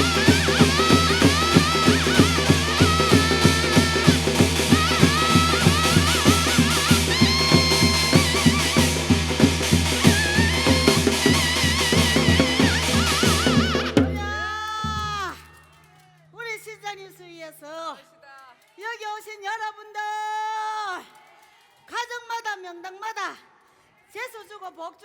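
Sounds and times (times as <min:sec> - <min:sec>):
wavering melody: 0:00.0 - 0:14.5
fast even drumming: 0:00.0 - 0:15.5.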